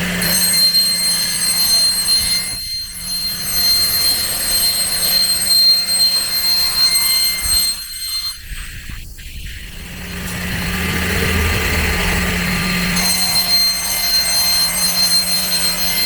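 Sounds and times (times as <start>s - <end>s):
machine noise: 0.0s - 16.0s
spindle high whine: 0.0s - 16.0s.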